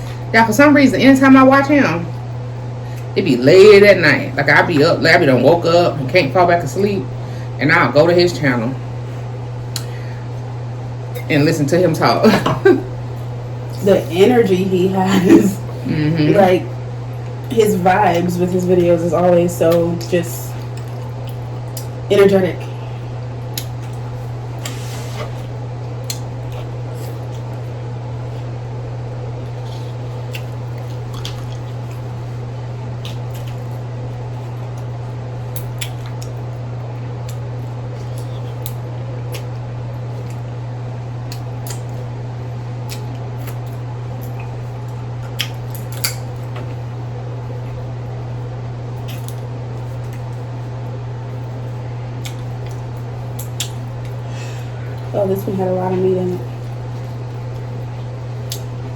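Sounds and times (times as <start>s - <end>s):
steady low hum: 0.0s - 58.9s.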